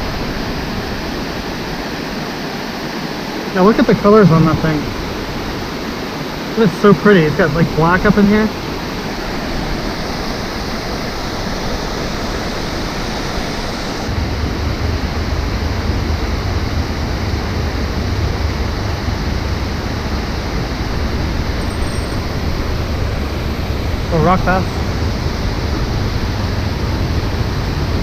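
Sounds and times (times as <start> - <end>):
creek water rushing: 0.0 - 28.0
low rumble: 14.1 - 28.0.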